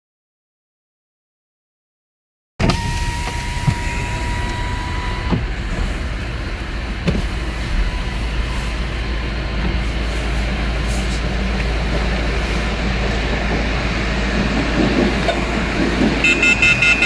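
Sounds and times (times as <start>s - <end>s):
steady high tone: 2.6s - 11.6s
vehicle engine rumble: 2.6s - 17.0s.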